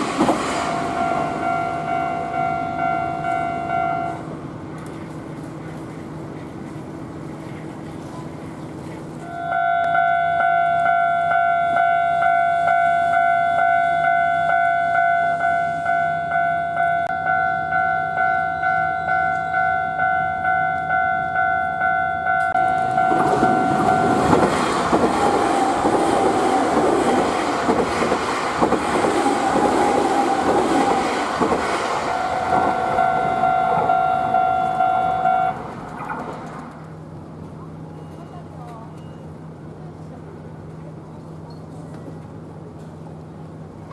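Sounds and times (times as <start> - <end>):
electric train passing: 0.0 - 38.5
level crossing bell ringing: 9.3 - 24.2, 32.2 - 35.6.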